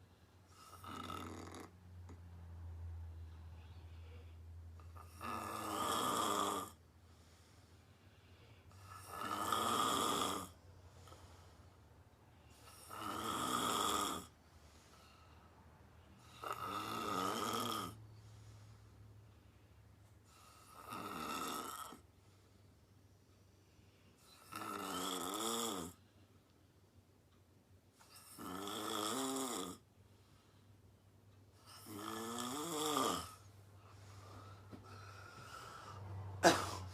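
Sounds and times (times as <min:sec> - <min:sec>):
woman snoring: 0:00.6 - 0:01.7, 0:05.0 - 0:06.8, 0:08.8 - 0:10.6, 0:12.6 - 0:14.3, 0:16.2 - 0:18.0, 0:20.5 - 0:22.0, 0:24.4 - 0:26.0, 0:28.2 - 0:29.8, 0:31.6 - 0:33.5.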